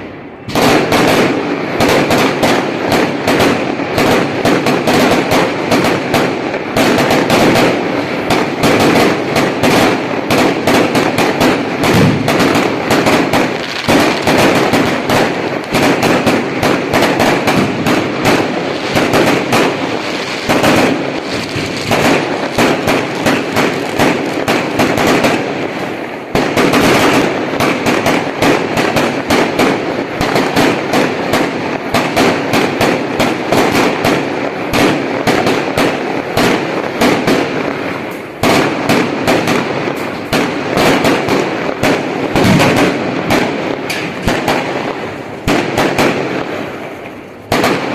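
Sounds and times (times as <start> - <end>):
dense crackling pops: 0.5 - 47.9.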